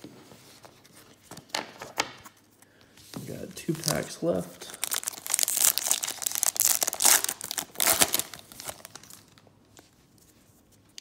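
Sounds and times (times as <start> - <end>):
plastic wrapper crinkling and tearing: 3.6 - 9.5.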